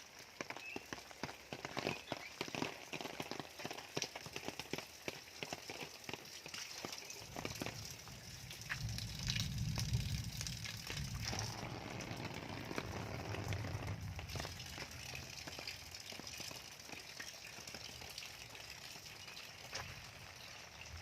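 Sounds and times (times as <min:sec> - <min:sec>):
rain falling: 0:00.0 - 0:21.0
low rumble: 0:07.4 - 0:15.5.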